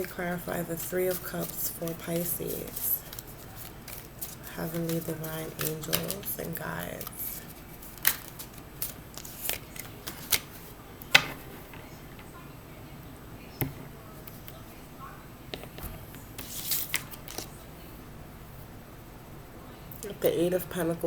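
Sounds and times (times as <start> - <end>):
cards being shuffled: 0.0 - 12.1, 15.6 - 17.6
card snaps and slaps: 8.0 - 10.5.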